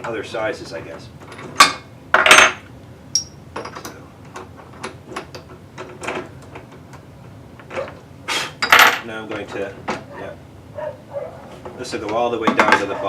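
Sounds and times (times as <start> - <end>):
tools clattering on workbench: 8.6 - 10.1, 11.5 - 13.0.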